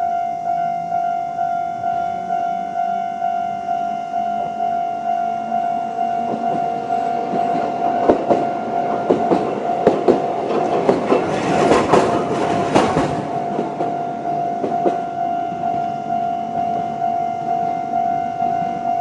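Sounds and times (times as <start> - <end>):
level crossing warning alarm: 0.0 - 19.0
tram wheels clicking over rail joints: 6.1 - 15.9.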